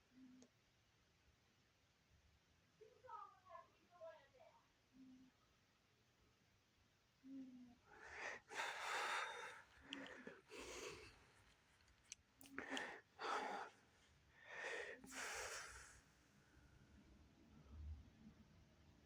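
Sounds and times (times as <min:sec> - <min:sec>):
person breathing loudly: 0:07.9 - 0:11.6, 0:12.4 - 0:16.2.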